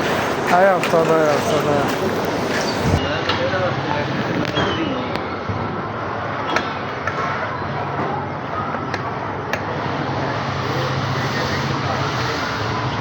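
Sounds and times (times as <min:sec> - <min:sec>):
street traffic noise: 0:00.0 - 0:13.0
vehicle engine humming: 0:09.7 - 0:13.0.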